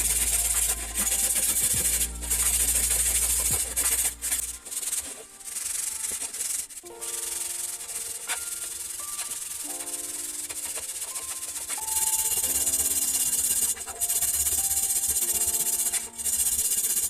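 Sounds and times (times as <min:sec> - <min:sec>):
low motor hum: 0:00.0 - 0:04.6
sanding metal scratching hiss: 0:00.0 - 0:17.0.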